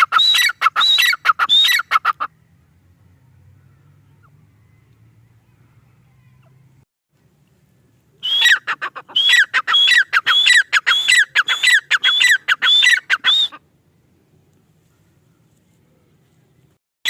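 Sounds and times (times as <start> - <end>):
francolin calling shrilly: 0.0 - 2.3, 8.2 - 13.6.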